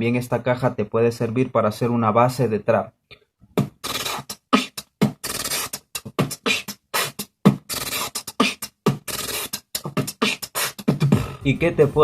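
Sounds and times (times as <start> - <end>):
person beatboxing: 3.6 - 12.0.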